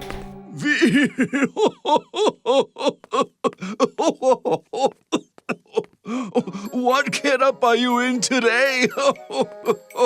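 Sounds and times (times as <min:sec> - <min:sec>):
cartoon character laughing: 0:00.7 - 0:05.9.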